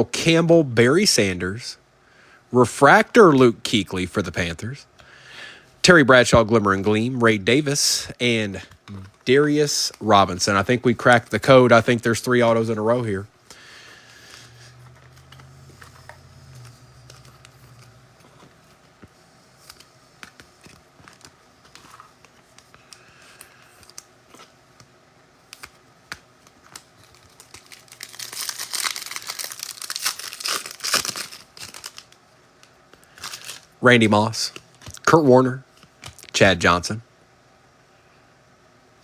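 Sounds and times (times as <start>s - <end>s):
wrapper crinkling and tearing: 14.0s - 18.9s, 25.5s - 33.8s
trading cards clicking: 14.8s - 18.7s.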